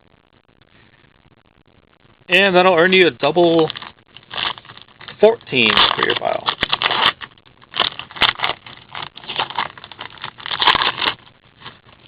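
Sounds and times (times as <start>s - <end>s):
foil wrapper crinkling: 3.2s - 12.0s.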